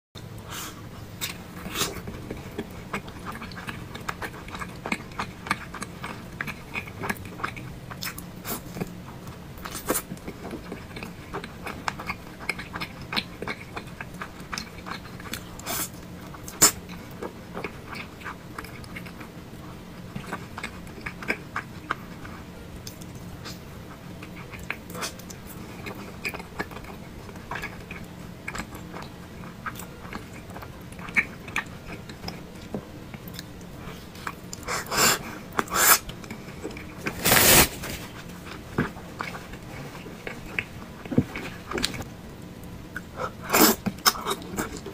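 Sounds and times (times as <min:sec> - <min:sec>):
chewing and mouth smacks: 0:20.0 - 0:37.1, 0:38.2 - 0:42.1.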